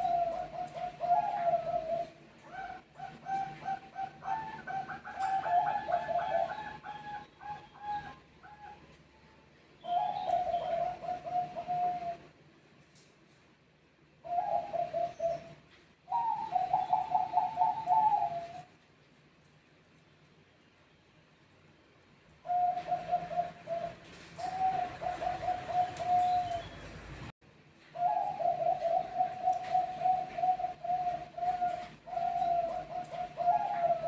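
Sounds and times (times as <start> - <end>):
doves cooing: 0.0 - 9.0, 9.8 - 12.4, 14.2 - 18.8, 22.4 - 27.3, 27.9 - 34.0.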